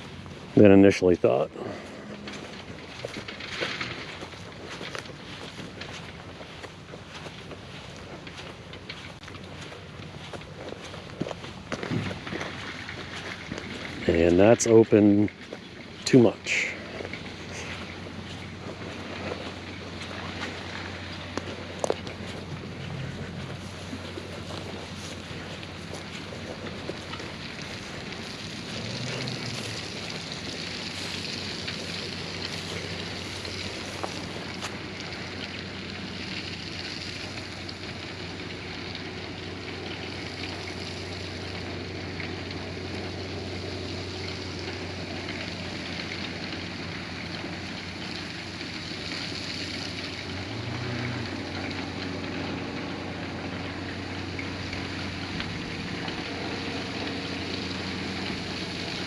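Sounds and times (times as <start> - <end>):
truck engine running: 0.0 - 59.0
rock rushing hiss: 15.9 - 38.0.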